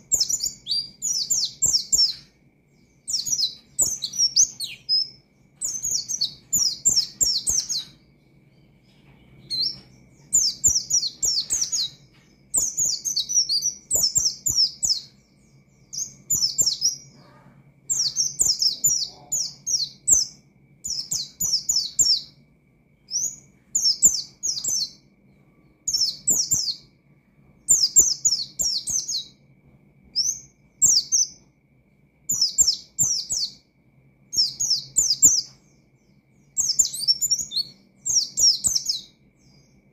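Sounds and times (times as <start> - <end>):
bird chirping in rapid bursts: 0.0 - 22.4, 23.0 - 25.0, 25.8 - 26.9, 27.6 - 29.4, 30.2 - 31.4, 32.3 - 33.7, 34.3 - 39.9.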